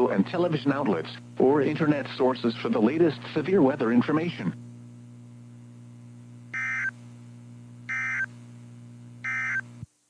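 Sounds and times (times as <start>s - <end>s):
radio receiver hum: 0.0s - 9.9s
buzzy digital chirps: 6.5s - 6.9s, 7.9s - 8.3s, 9.2s - 9.7s.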